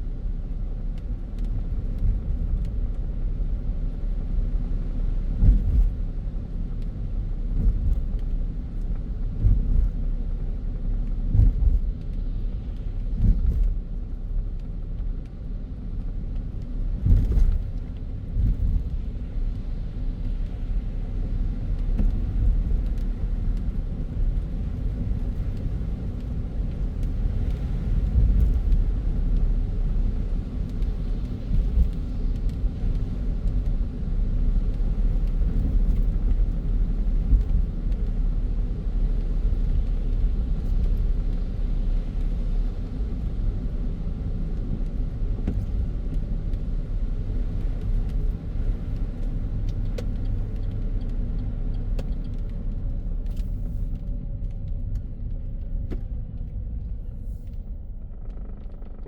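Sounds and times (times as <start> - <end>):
car engine and tyre rumble: 0.0 - 59.0.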